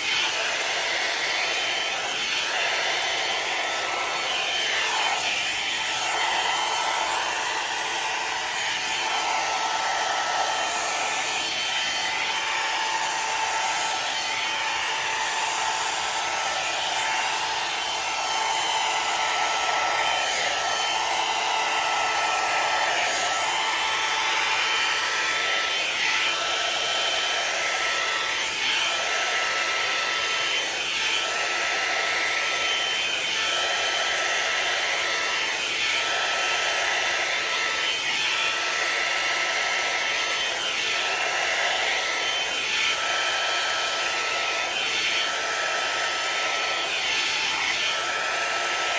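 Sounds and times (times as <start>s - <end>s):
hair dryer blowing: 0.0s - 48.9s.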